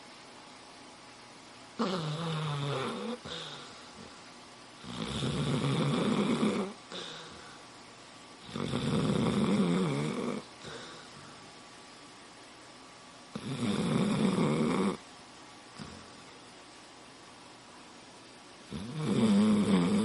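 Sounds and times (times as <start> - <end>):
dog snoring: 1.8 - 4.1, 4.8 - 7.6, 8.4 - 11.1, 13.3 - 15.0, 18.7 - 20.0.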